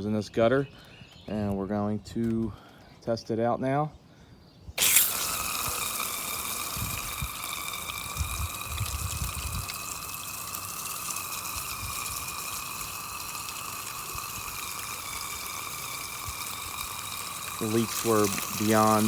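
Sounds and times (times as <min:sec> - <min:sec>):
hose spraying water into gutter: 0:04.8 - 0:19.0.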